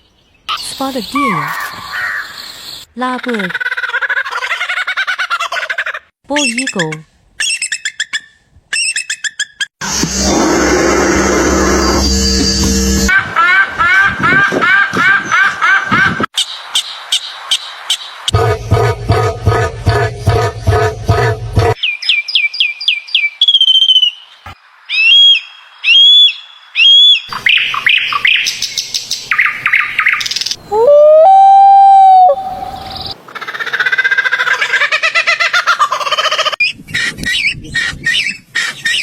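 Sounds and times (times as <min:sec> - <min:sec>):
bird calls: 0:15.0 - 0:31.1, 0:32.2 - 0:39.0.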